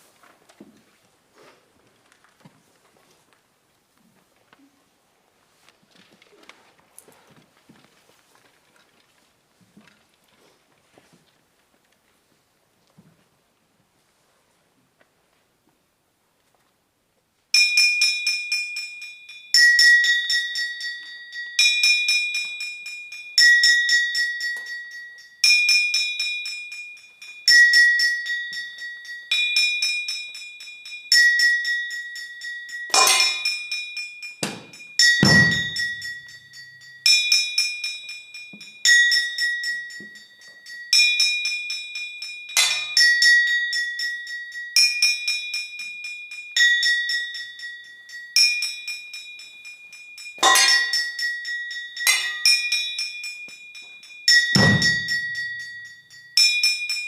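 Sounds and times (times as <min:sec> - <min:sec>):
strikes on bell-like metal: 0:17.6 - 0:57.0.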